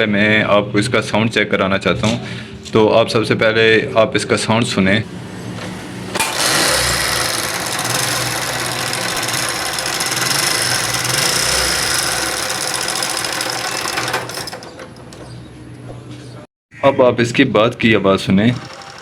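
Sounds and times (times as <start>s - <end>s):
fast mechanical ticking: 6.2s - 15.2s, 18.4s - 19.0s
motorcycle engine running: 6.4s - 14.7s.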